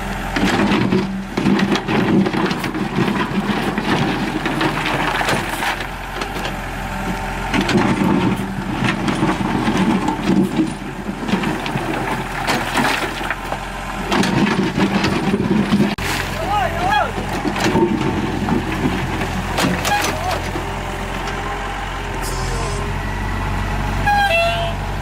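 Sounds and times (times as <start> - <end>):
excavator engine running: 0.0 - 25.0
knocks and cracking: 7.5 - 16.3, 17.2 - 20.7.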